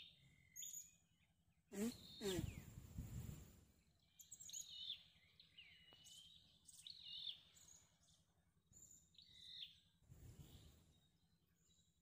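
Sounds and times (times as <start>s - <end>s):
bird calling faintly: 1.7s - 2.8s.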